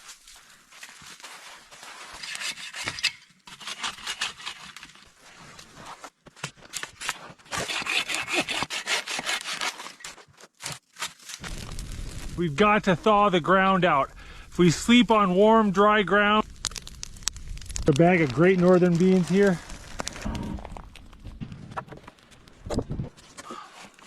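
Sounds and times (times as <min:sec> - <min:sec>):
hand saw cutting wood: 0:02.2 - 0:04.8, 0:07.0 - 0:10.2.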